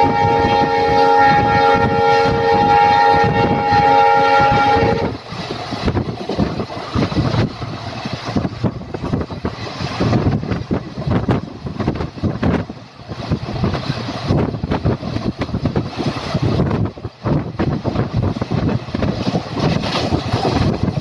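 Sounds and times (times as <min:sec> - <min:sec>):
locomotive horn blast: 0:00.0 - 0:05.2
train rumbling over rails: 0:00.0 - 0:21.0.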